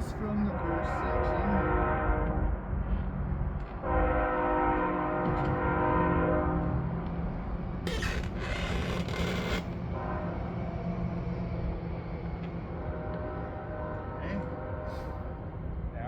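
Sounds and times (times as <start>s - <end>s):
ominous music with horn-like chords: 0.4s - 3.1s, 3.7s - 7.6s, 8.5s - 11.0s, 12.6s - 16.0s.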